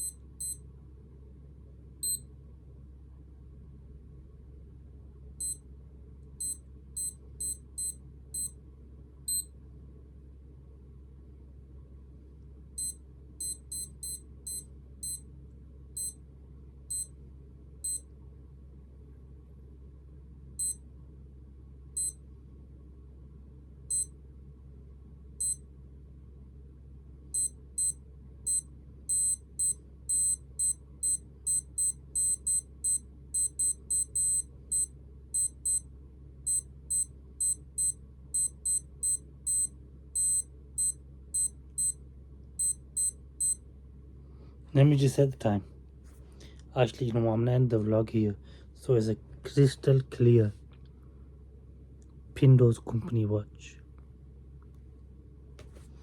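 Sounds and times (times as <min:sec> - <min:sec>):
watch beeping: 0:00.0 - 0:00.6, 0:05.4 - 0:05.6, 0:06.4 - 0:08.5, 0:12.8 - 0:15.2, 0:16.0 - 0:16.2, 0:17.8 - 0:18.0, 0:27.4 - 0:35.8, 0:36.5 - 0:42.0, 0:42.6 - 0:43.6.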